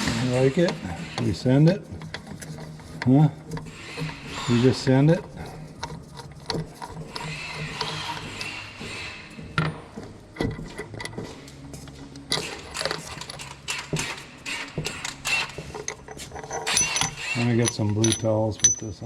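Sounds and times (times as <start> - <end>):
metal tools clinking: 14.9 - 19.0.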